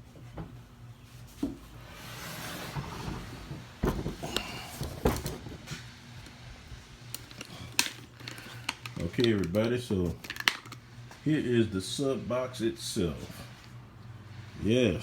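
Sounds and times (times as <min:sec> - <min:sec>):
boxes rustling and rubbing: 0:01.1 - 0:06.3.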